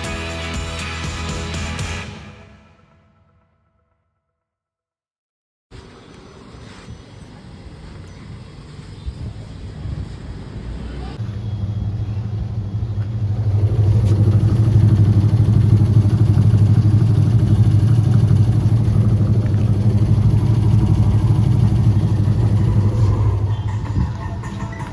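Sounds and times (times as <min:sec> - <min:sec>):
washing machine motor hum: 0:11.2 - 0:24.5.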